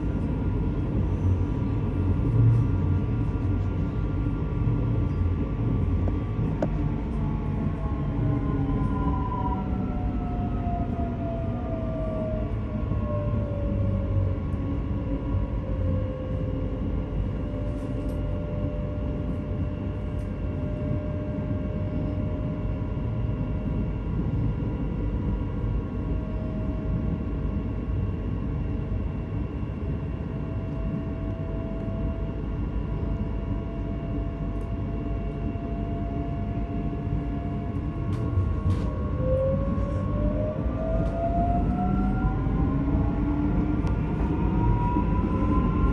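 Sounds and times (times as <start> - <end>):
electric train rumbling: 0.0 - 45.9
train motor whine: 34.1 - 45.9.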